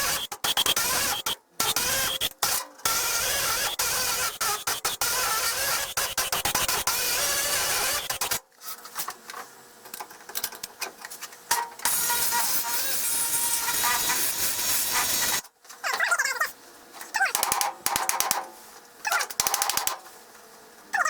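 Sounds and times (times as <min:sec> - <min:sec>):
welder crackling hiss: 0:00.0 - 0:08.4.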